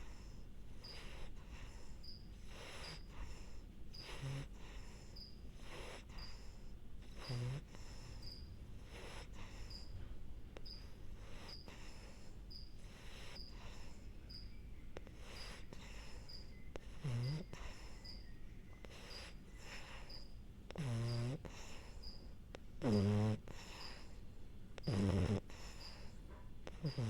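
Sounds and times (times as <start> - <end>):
dog breathing noisily: 0.0 - 27.0
buzzing snore: 0.2 - 9.9, 15.0 - 18.1, 18.8 - 22.1, 22.8 - 24.1, 24.8 - 27.0
faint high chirp: 13.4 - 20.4.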